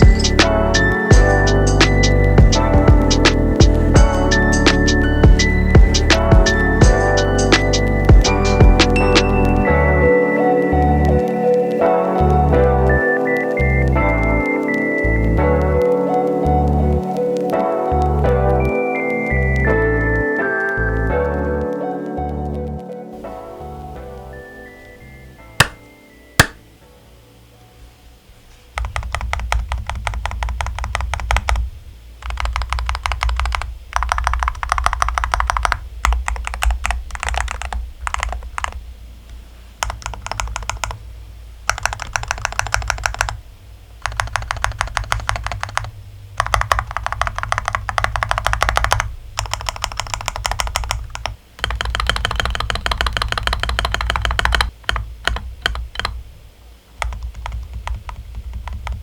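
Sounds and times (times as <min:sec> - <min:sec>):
keyboard keys clacking: 0:00.0 - 0:38.9, 0:39.7 - 0:43.4, 0:44.0 - 0:59.0.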